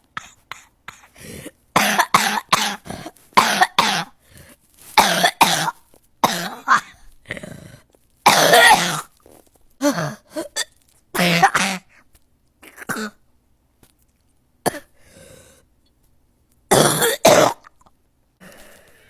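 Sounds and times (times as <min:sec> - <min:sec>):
people coughing: 0:01.8 - 0:04.1, 0:08.3 - 0:09.0, 0:16.7 - 0:17.6.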